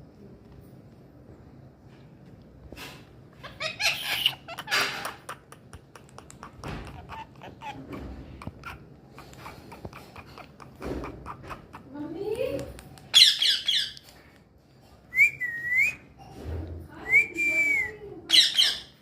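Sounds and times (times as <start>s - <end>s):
parrot harsh calls: 3.4s - 11.9s
parrot clicks: 4.7s - 7.6s.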